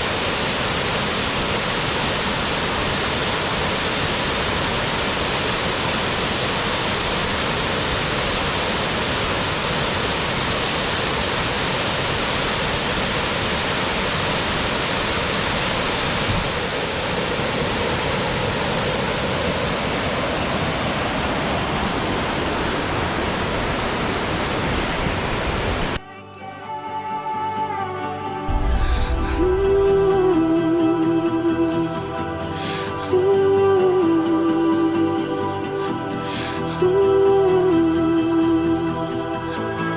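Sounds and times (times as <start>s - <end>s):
waterfall roaring: 0.0s - 26.0s, 28.4s - 36.8s
soft music: 26.0s - 39.9s.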